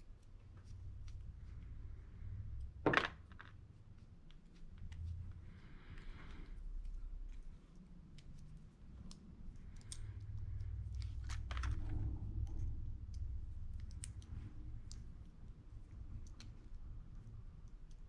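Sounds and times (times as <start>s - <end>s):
low handling rumble: 9.3s - 17.2s.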